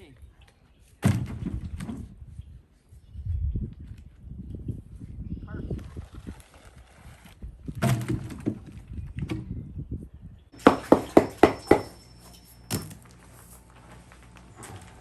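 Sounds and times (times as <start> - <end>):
sharp knocks: 10.6 - 12.0
rustling and handling noise: 11.4 - 15.0.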